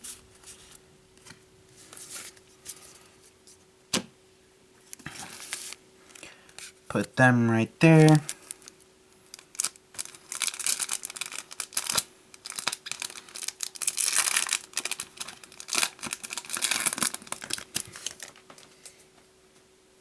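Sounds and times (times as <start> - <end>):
foil wrapper crinkling and tearing: 8.0 - 18.7.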